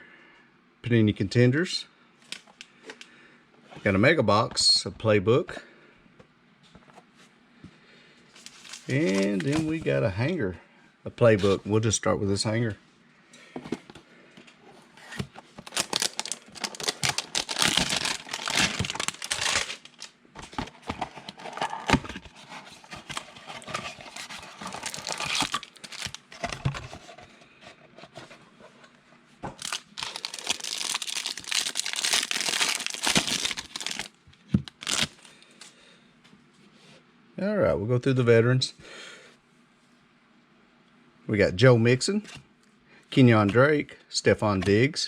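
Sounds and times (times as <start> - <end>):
plastic wrapping crackling: 8.4 - 9.7, 15.6 - 20.2, 22.9 - 26.4, 29.6 - 35.3.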